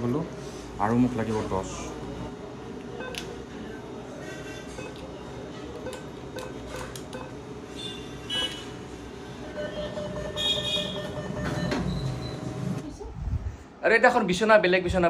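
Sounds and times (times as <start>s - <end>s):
keypad beeps: 3.0s - 3.3s, 4.8s - 5.0s, 5.8s - 7.4s, 9.6s - 12.5s.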